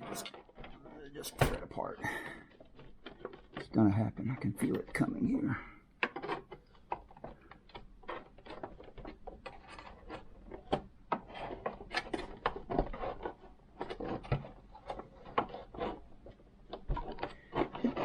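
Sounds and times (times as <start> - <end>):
plastic case clicking and creaking: 6.0 - 18.0.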